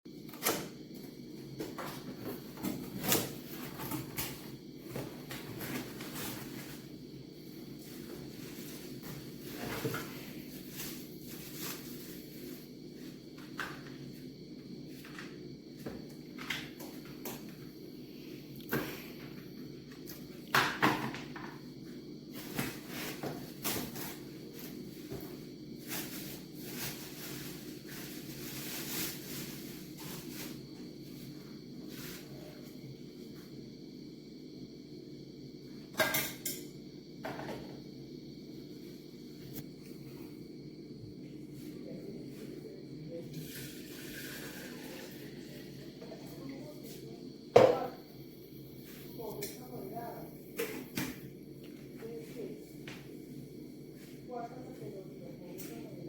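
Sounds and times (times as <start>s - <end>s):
steady low hum: 44.8s - 56.0s.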